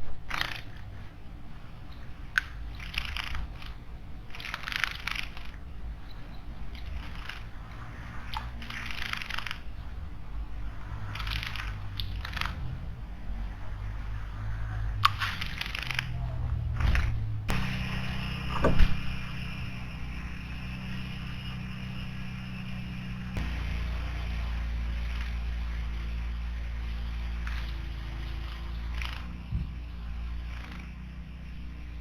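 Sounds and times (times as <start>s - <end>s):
wings fluttering: 0.0s - 32.0s
sharp ticks: 10.6s - 26.2s.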